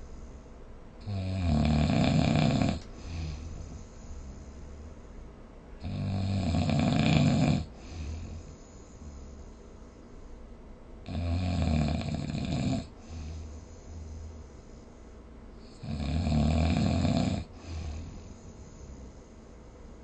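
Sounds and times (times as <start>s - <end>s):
quiet breathing: 0.0s - 11.3s, 11.9s - 20.0s
person snoring: 1.0s - 5.0s, 5.8s - 9.6s, 11.1s - 14.7s, 15.6s - 19.2s.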